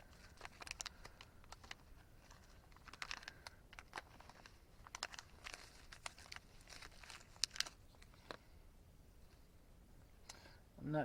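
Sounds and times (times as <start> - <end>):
plastic packaging crinkling: 0.0 - 8.5.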